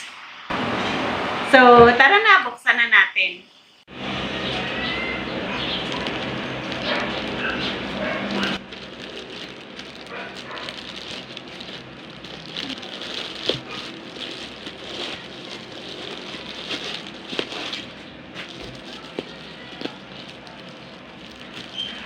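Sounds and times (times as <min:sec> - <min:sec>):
packaging crinkling and rustling: 0:04.4 - 0:22.0.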